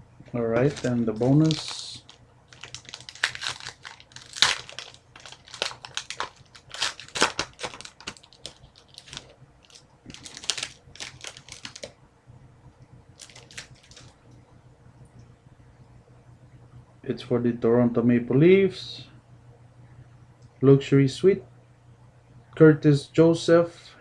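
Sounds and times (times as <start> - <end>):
card pack wrapper crinkling: 0.5 - 11.9, 13.2 - 14.2.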